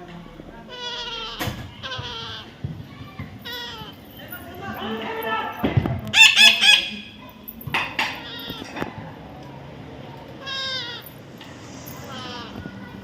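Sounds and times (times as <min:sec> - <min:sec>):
parrot squawking: 0:00.7 - 0:02.6, 0:03.4 - 0:04.0, 0:06.1 - 0:07.2, 0:08.0 - 0:08.8, 0:10.4 - 0:11.2, 0:11.9 - 0:12.7.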